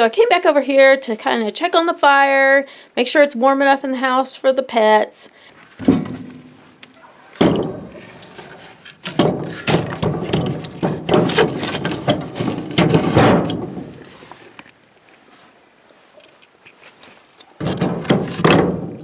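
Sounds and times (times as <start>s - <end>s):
wood and metal knocks and scrapes: 5.8s - 6.8s, 7.4s - 14.3s, 17.6s - 19.0s.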